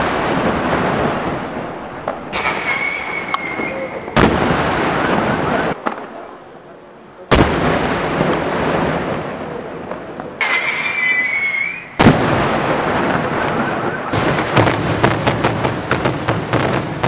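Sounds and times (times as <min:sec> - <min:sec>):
firework whistling: 0:00.0 - 0:05.8, 0:10.4 - 0:16.8
firework bang: 0:00.0 - 0:06.2, 0:07.3 - 0:17.0
rapid firework cracks: 0:00.0 - 0:06.2, 0:07.3 - 0:17.0
fireworks crackling rumble: 0:00.0 - 0:17.0.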